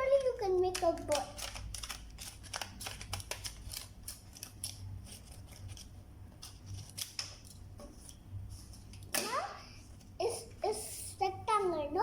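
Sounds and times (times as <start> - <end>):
scissors cutting paper: 0.0 - 8.2.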